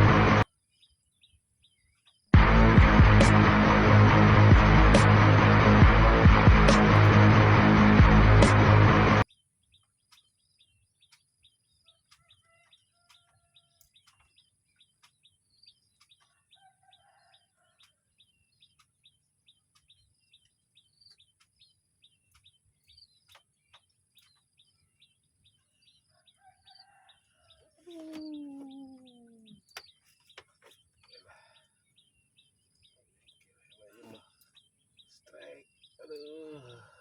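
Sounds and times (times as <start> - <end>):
birds chirping: 6.6 - 37.0
lower bird calls: 27.8 - 32.2, 33.4 - 37.0.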